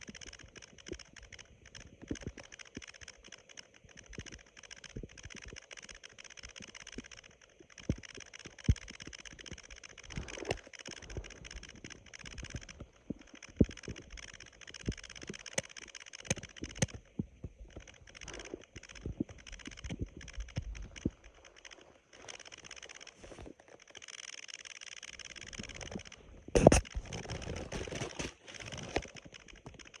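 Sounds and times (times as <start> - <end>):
stomach pops and clicks: 0.0 - 24.1, 25.1 - 30.0
stomach gurgle: 7.7 - 15.6, 16.2 - 22.3, 25.4 - 30.0.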